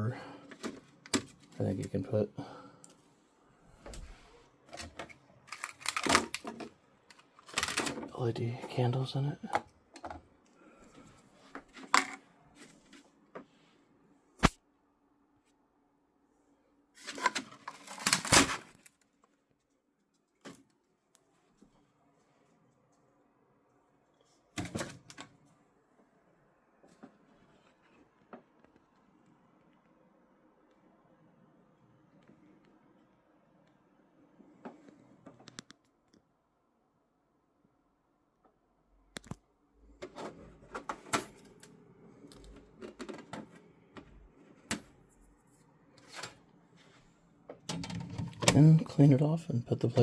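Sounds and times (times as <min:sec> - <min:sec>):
clicks and knocks of small objects: 0:04.7 - 0:08.1.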